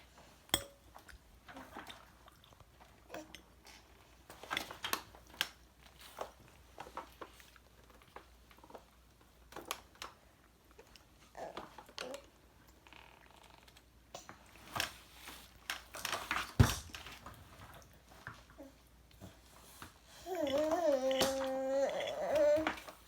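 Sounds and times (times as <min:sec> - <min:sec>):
soft chewing: 0:01.0 - 0:04.2, 0:05.8 - 0:08.8.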